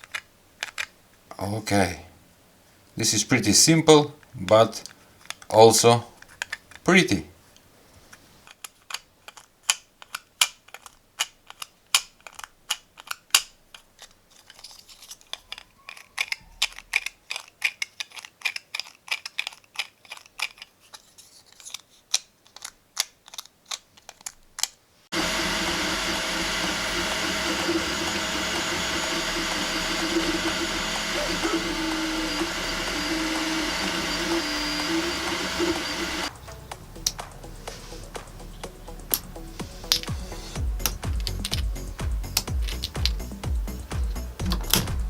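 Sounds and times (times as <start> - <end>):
plastic fidget toy clicking: 0.0 - 0.9, 4.8 - 5.6, 6.2 - 6.9, 8.5 - 24.8, 39.1 - 40.1, 40.8 - 43.4
machine whir with humming tone: 25.1 - 36.3.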